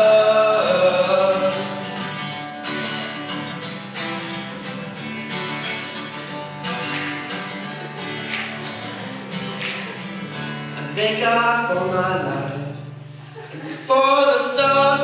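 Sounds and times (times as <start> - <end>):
acoustic guitar strumming: 0.0 - 15.0.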